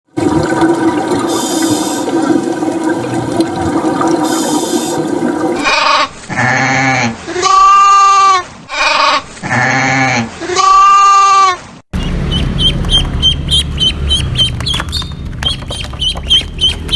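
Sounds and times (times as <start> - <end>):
bleating animal calls: 5.6 - 11.6.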